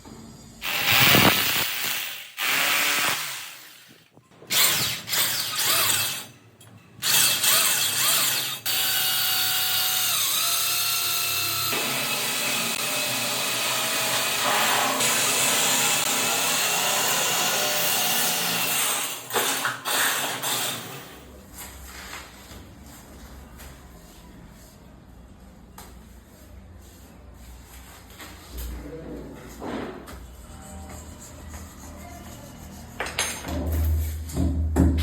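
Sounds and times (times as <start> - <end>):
power tool whining: 0.6 - 6.3.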